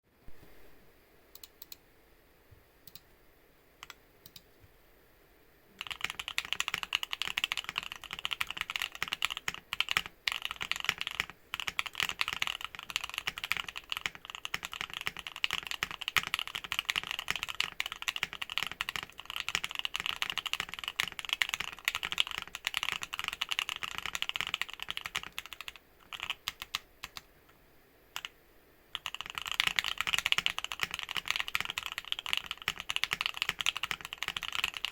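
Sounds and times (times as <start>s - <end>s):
typing on mechanical keyboard: 5.8s - 27.2s, 29.0s - 34.9s.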